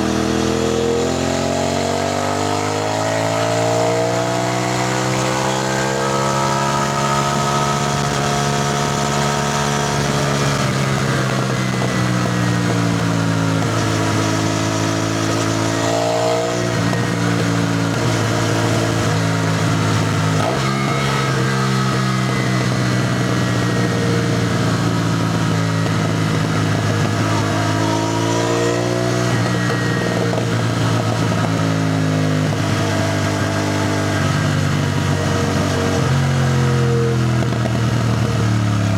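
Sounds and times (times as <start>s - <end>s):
motorcycle engine: 0.0s - 38.9s.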